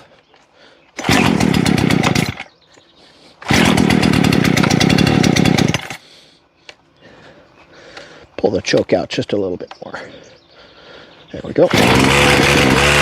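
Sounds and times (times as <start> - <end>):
chainsaw pull-starting: 1.0 - 2.5, 3.4 - 6.0, 11.5 - 13.0
chainsaw engine running briefly: 11.7 - 13.0.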